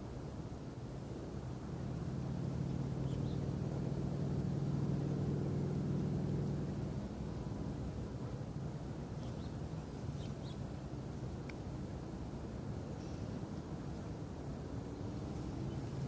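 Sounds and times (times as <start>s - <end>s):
motor engine passing by: 1.7s - 8.0s
faint bird chirps: 3.0s - 3.5s, 9.2s - 10.7s, 12.9s - 13.4s.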